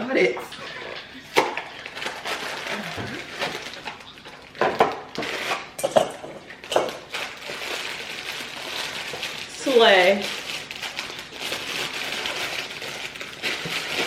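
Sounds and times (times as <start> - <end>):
bowl and utensils clattering: 0.3 - 7.6.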